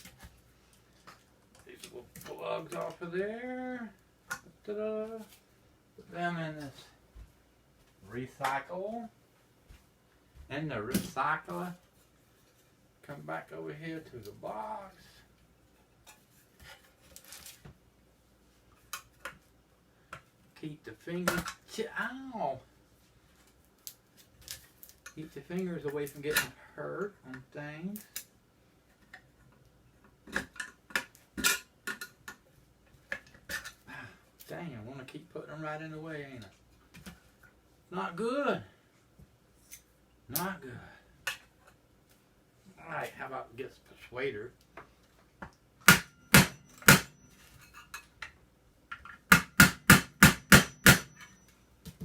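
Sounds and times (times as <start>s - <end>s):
hammer striking metal: 45.9s - 47.2s, 49.3s - 51.4s.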